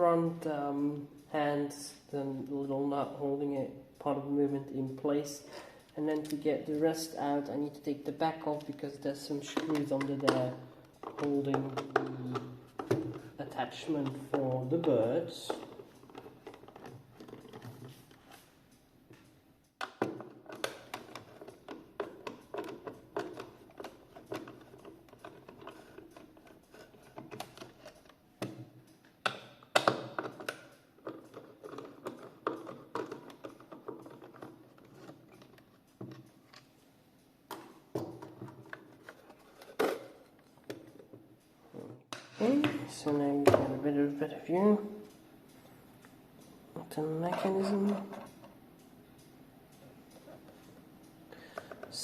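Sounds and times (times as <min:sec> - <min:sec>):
hand tools tapping clock case: 0:08.4 - 0:18.1, 0:19.2 - 0:36.6.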